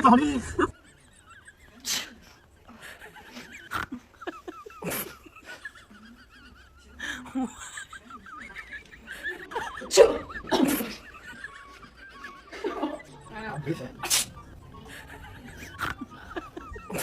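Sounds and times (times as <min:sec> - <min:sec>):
giggling laughter: 0:00.0 - 0:17.0
fake sneezes: 0:14.0 - 0:14.4.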